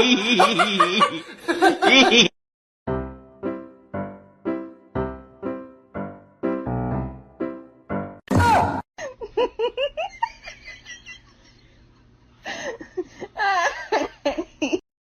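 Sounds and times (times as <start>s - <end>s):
laughter in rapid bursts: 0.0s - 2.3s, 9.0s - 11.7s, 12.5s - 14.8s.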